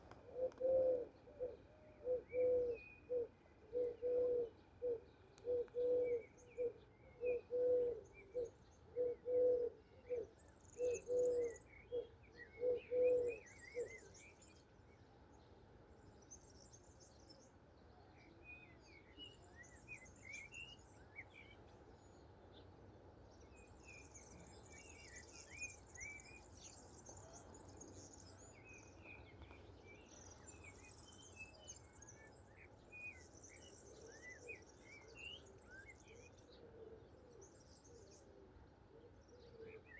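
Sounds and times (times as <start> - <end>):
dove cooing: 0.0 - 14.0, 36.5 - 37.5
songbirds chirping and trilling: 0.0 - 39.9.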